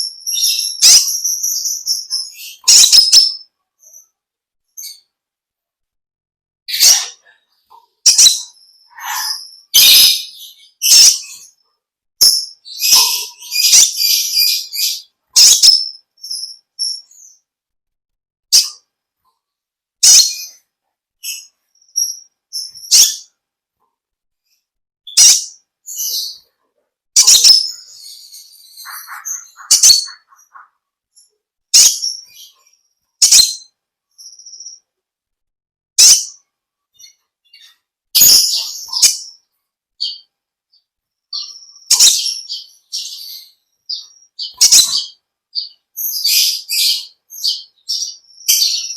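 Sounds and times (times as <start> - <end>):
sunbird chirping and chattering: 0.0 - 4.1, 6.7 - 11.6, 12.2 - 17.4, 21.2 - 23.3, 27.2 - 34.9, 36.0 - 48.9.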